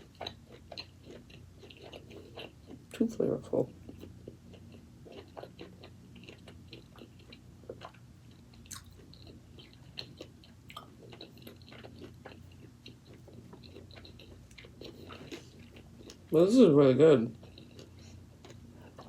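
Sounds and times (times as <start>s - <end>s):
person chewing food: 0.0s - 3.0s, 3.7s - 16.3s, 17.4s - 19.0s
steady low hum: 0.0s - 19.0s.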